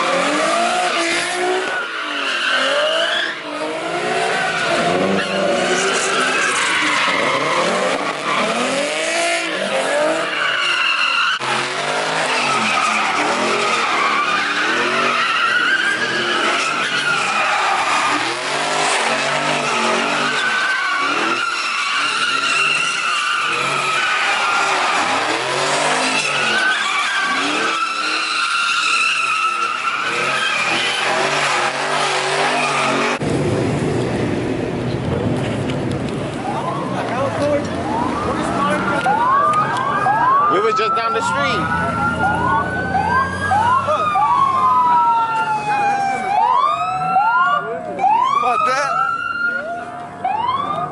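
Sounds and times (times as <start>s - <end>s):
tires squealing: 0.0s - 33.3s, 35.4s - 50.9s
car engine revving: 0.0s - 36.4s.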